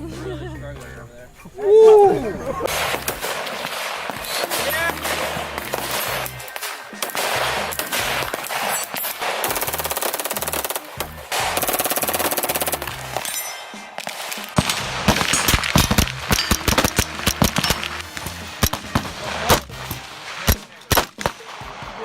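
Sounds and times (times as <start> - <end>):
automatic gunfire: 2.7 - 13.3, 13.9 - 22.0
background music with bass line: 4.0 - 13.3, 14.6 - 20.6
single gunshots: 13.6 - 22.0.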